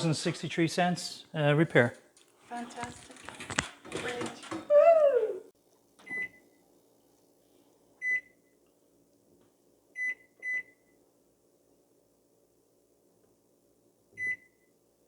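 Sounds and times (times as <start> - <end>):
microwave beeping: 6.0 - 6.5, 8.0 - 8.4, 10.0 - 11.0, 14.2 - 14.7.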